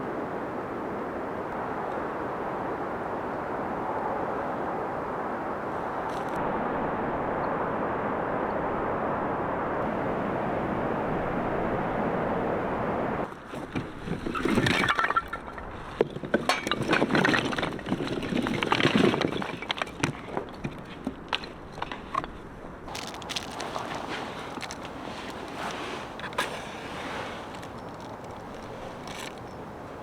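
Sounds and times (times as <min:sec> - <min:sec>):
camping gear clinking and clattering: 0:05.8 - 0:06.4, 0:13.3 - 0:30.0.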